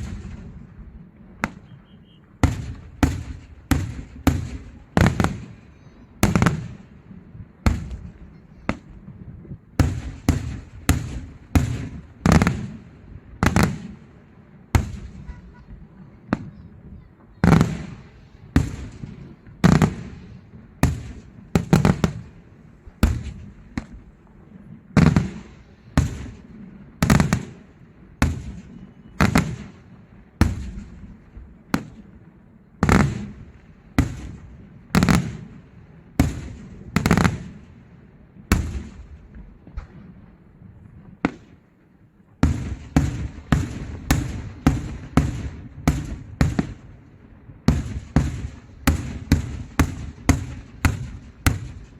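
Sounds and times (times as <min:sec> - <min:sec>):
firework shells bursting: 0:42.4 - 0:46.9.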